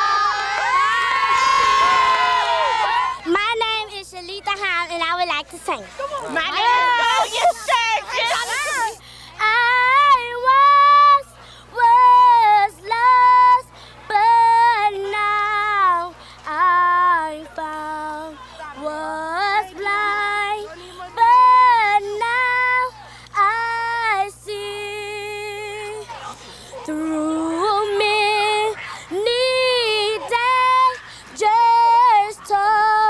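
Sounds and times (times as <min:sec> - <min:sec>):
girls singing unaccompanied: 0:07.0 - 0:26.2, 0:26.8 - 0:33.0.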